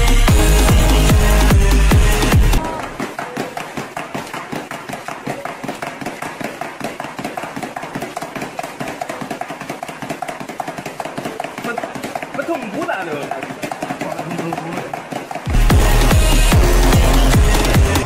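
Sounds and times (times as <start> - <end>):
rapid light tapping: 2.8 - 16.6.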